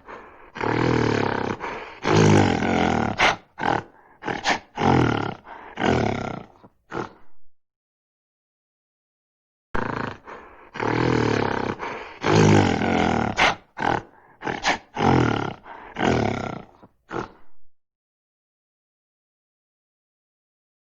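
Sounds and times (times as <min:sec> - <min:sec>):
gorilla grunts and roars: 0:00.0 - 0:07.4, 0:09.8 - 0:17.6.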